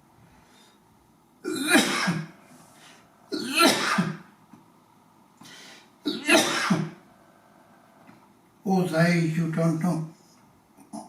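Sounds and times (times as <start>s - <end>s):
man coughing: 1.4s - 2.4s, 3.3s - 4.3s, 6.1s - 7.0s.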